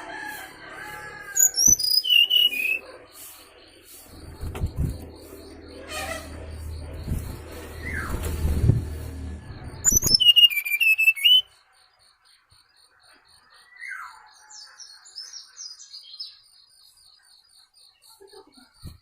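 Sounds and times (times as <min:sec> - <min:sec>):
bird warbling and chirping song: 0:00.8 - 0:19.0
faint high chirps: 0:00.8 - 0:19.0
downward-sliding whistle: 0:09.8 - 0:11.4.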